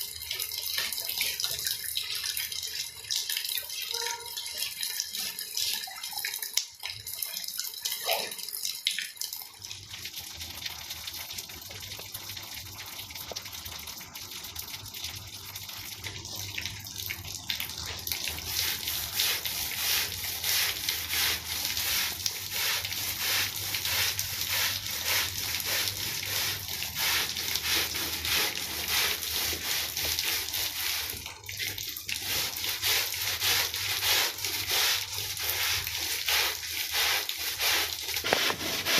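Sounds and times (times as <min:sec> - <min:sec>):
water running and splashing: 0:00.0 - 0:38.9
scrubbing wet rug: 0:17.5 - 0:38.9.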